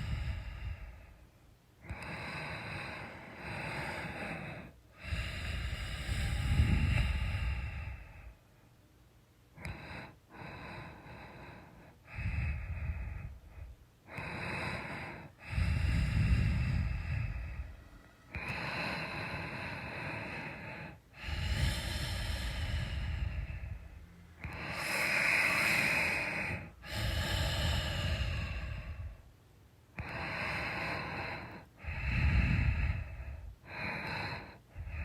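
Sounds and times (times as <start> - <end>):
person snoring: 1.9 - 8.3, 14.1 - 29.2, 30.0 - 35.0.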